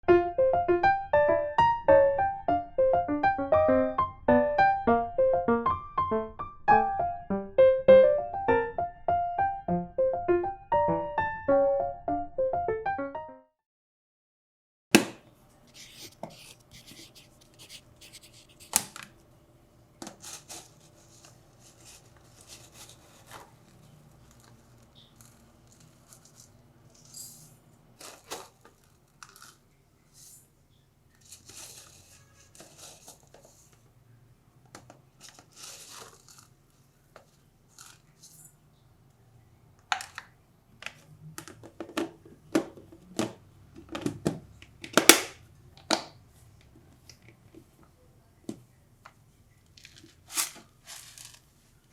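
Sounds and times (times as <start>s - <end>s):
packaging rustling and crinkling: 20.0s - 27.4s, 28.0s - 29.6s, 31.1s - 33.8s, 35.2s - 38.4s, 49.7s - 51.7s.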